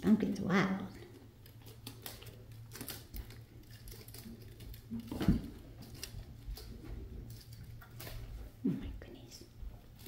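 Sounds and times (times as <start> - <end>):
claws scrabbling on hard surface: 1.0 - 8.6.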